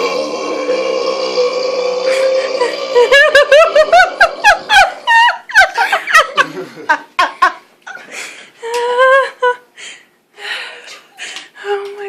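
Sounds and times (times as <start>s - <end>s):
high-pitched laughter: 2.1s - 7.4s.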